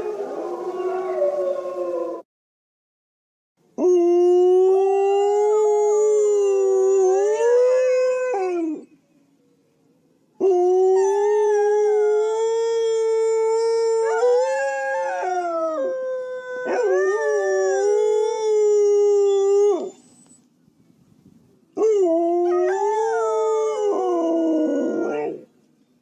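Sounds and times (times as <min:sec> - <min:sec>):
dogs howling together: 0:00.0 - 0:02.2, 0:10.4 - 0:20.0, 0:21.8 - 0:25.5.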